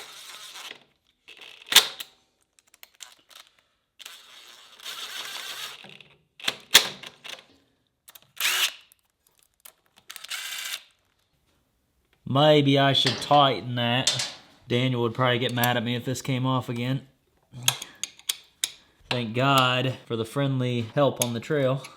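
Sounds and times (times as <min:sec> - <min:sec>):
metallic tool clicks and knocks: 0:13.0 - 0:14.5, 0:17.6 - 0:19.7
scraping and rattling: 0:13.0 - 0:14.7.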